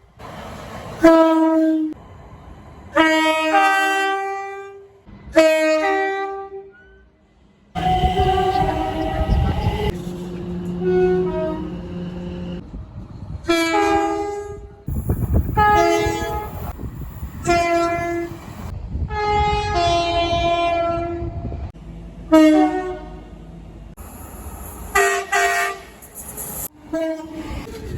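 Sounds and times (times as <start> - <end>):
train rumbling: 0.0 - 6.4, 7.3 - 27.9
train horn two-tone blasts: 1.0 - 2.0, 2.9 - 7.1, 7.8 - 12.6, 13.4 - 21.5, 22.3 - 23.3, 24.9 - 26.0, 26.8 - 27.7.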